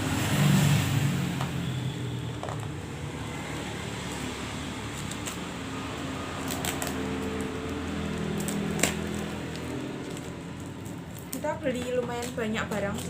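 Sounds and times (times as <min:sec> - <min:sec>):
packaging clicks: 0:06.3 - 0:12.4.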